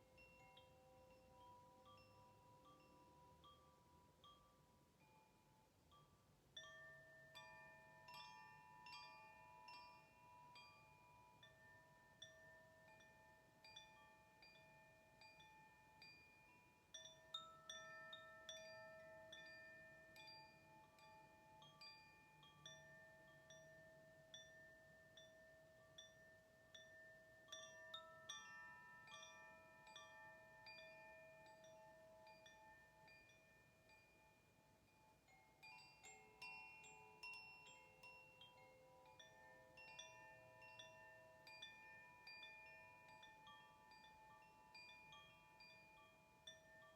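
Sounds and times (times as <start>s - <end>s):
metal chimes tinkling: 0.0s - 46.9s.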